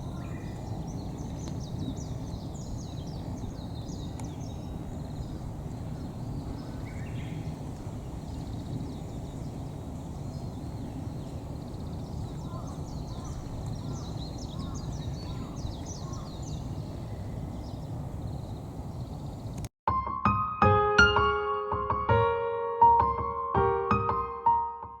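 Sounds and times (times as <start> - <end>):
birds chirping: 0.0 - 19.7.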